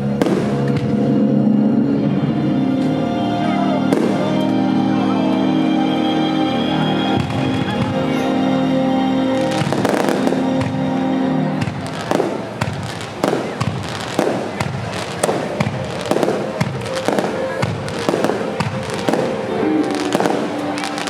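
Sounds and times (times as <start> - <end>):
music with sustained chords: 0.0 - 21.0
firework shells bursting with crackle: 0.1 - 1.0, 11.6 - 21.0
sharp firework bangs: 0.2 - 1.0, 11.6 - 21.0.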